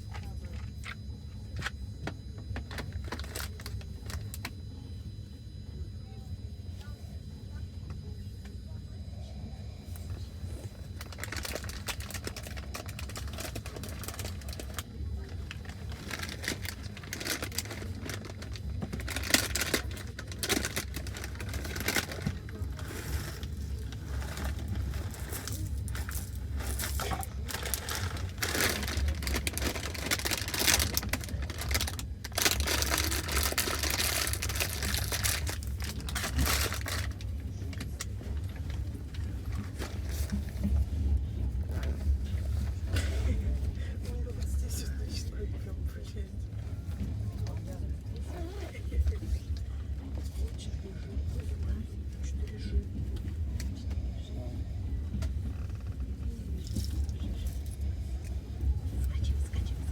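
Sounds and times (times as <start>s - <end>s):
crinkling rustling noise: 2.6s - 4.5s, 10.8s - 43.7s.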